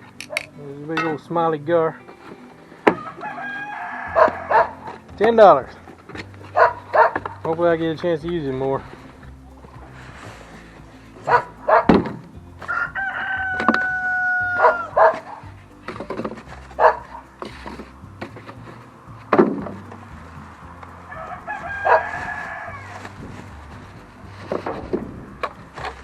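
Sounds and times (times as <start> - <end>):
rooster crowing: 2.9 - 5.0, 12.6 - 15.4, 21.1 - 23.1.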